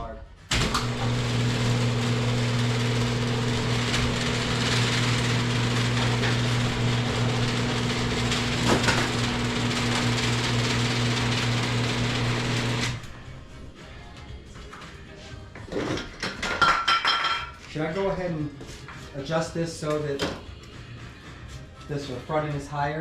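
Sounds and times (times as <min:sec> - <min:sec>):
machine humming: 0:00.5 - 0:13.2.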